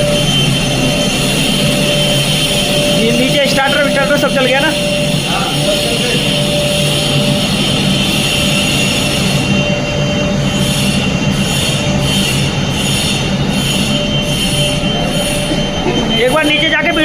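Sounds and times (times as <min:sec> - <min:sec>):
high-pitched fire alarm tone: 0:00.0 - 0:17.0
machinery rushing noise: 0:00.0 - 0:17.0.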